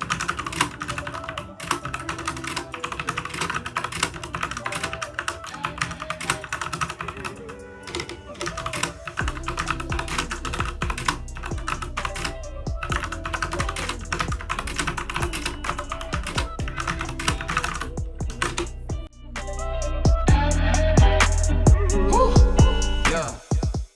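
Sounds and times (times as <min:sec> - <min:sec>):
typing on mechanical keyboard: 0:00.0 - 0:18.8
background music with bass: 0:09.2 - 0:23.9.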